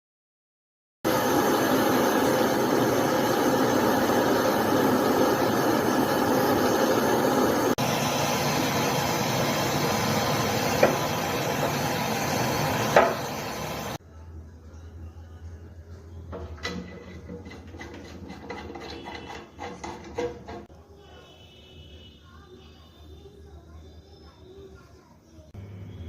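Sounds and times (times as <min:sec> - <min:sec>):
washing machine running loudly: 0:01.1 - 0:14.0, 0:16.3 - 0:20.7.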